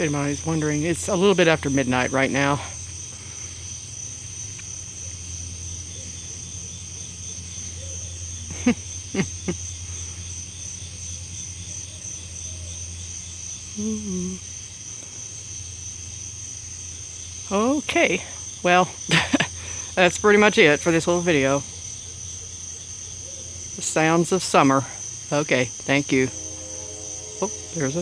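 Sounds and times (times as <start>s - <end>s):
crickets and insects chirping: 0.0s - 28.0s
low steady hum: 23.8s - 28.0s
calls sweeping sharply downward: 26.0s - 28.0s.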